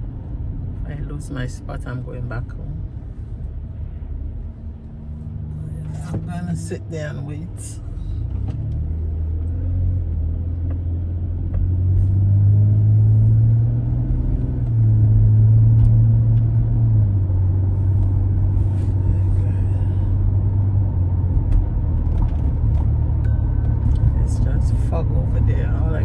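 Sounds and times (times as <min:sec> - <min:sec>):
car engine and road noise: 0:00.0 - 0:26.0.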